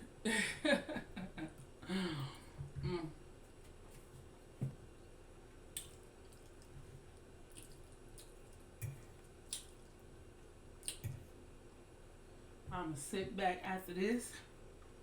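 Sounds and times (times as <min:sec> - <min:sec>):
wet mouth smacks chewing: 0:05.7 - 0:06.7, 0:07.5 - 0:10.0, 0:10.8 - 0:11.2.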